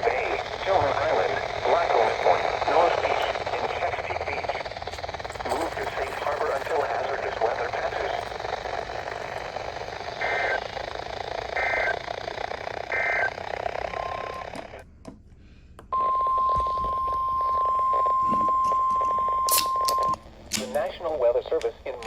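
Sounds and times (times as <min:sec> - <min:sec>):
warbling digital data bursts: 0:00.0 - 0:14.6
radio static: 0:00.0 - 0:14.8, 0:16.0 - 0:22.0
steady alarm tone: 0:00.0 - 0:14.8, 0:15.9 - 0:21.4.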